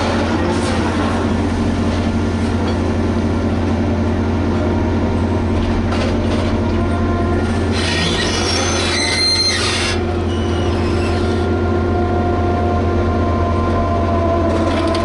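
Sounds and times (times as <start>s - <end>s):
diesel engine humming: 0.0s - 15.0s
high-pitched squeal: 7.0s - 15.0s.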